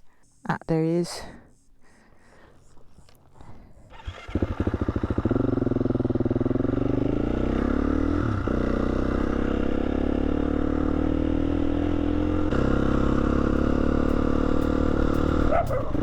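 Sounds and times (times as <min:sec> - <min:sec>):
motorcycle engine revving up: 0:03.8 - 0:16.0.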